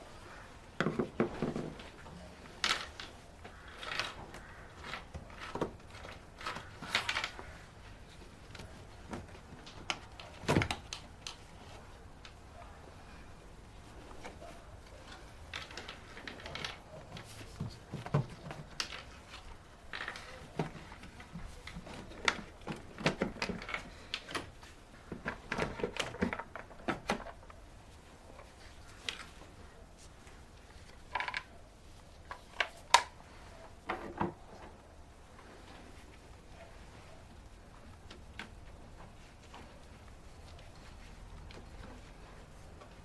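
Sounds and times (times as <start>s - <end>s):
plastic clips clicking: 2.6s - 7.5s.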